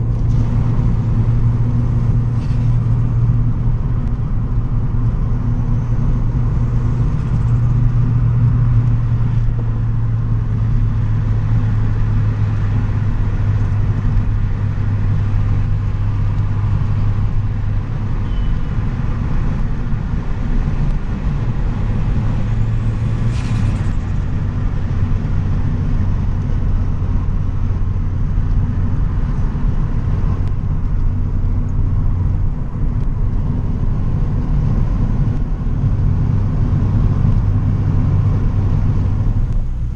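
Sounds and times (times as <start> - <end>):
car engine running while driving: 0.0 - 39.9
faint high whistle: 18.2 - 18.7.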